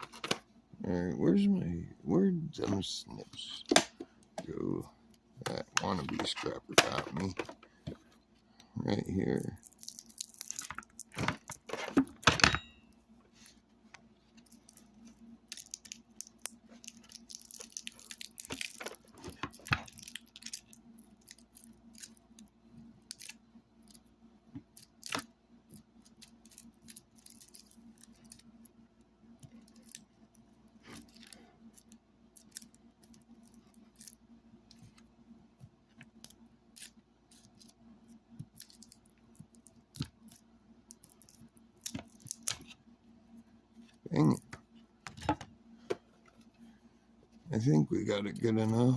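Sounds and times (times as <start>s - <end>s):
rustling of parts: 9.6s - 22.5s.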